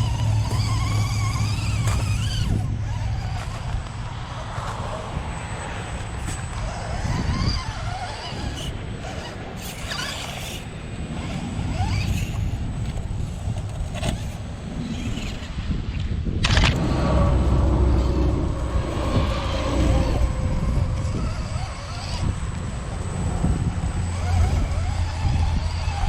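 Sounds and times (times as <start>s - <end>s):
small electric motor whining: 0.0s - 26.0s
clicks and scrapes on rocks: 0.1s - 5.0s, 5.9s - 15.5s
low rumble: 16.4s - 25.6s.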